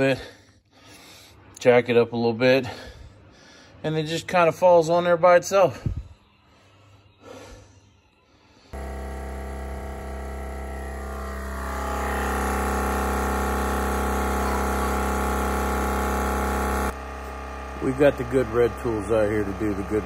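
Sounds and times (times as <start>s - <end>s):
machine motor humming: 8.8s - 20.0s.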